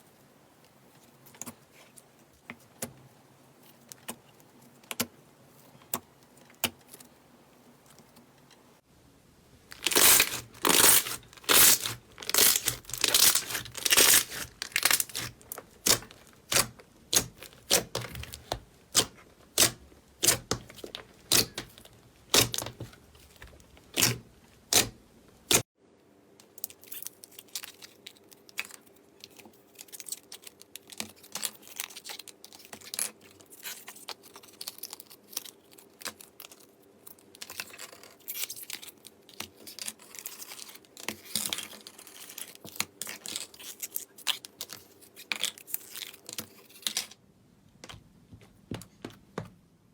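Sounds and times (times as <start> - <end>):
slime squishing and crackling: 9.7 - 25.6.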